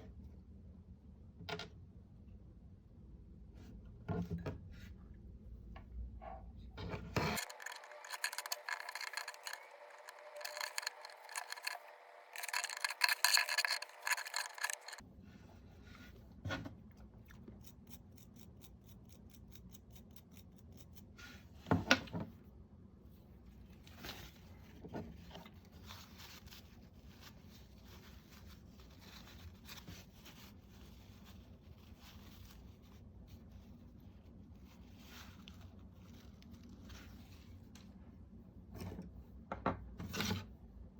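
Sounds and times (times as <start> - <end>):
hand tools scraping plastic: 6.8 - 15.0
handling noise: 7.2 - 15.0.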